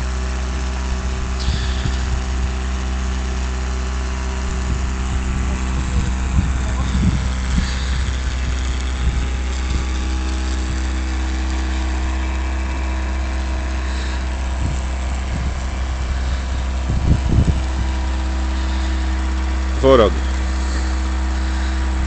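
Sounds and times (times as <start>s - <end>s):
vehicle engine humming: 0.0s - 22.0s
low thumps: 4.2s - 21.6s.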